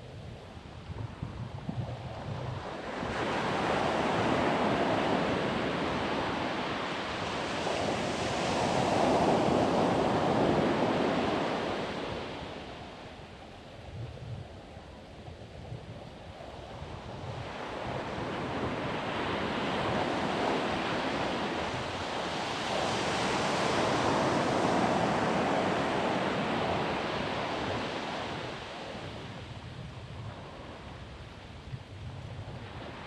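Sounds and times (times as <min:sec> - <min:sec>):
low wind rumble on microphone: 0:00.0 - 0:33.0
ocean wave breaking on beach: 0:18.0 - 0:29.5.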